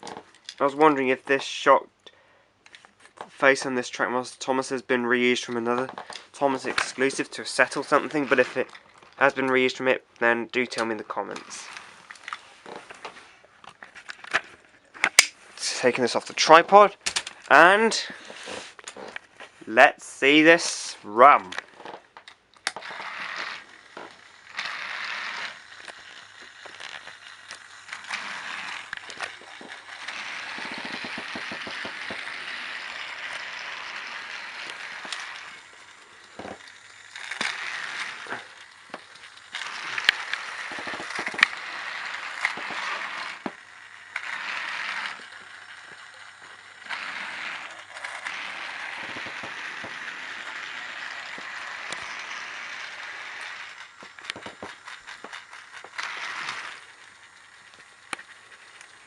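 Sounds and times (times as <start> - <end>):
toy train motor whirring: 0.0 - 1.6, 2.6 - 9.9, 10.5 - 19.3, 20.0 - 59.0
clicks and clatter: 17.0 - 17.5, 21.5 - 59.0.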